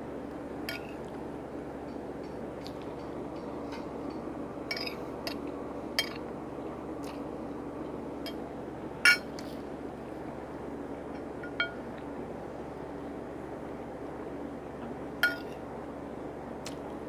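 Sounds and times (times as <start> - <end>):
low background hum: 0.0 - 17.0
cutlery clinking against a dish: 2.3 - 5.4.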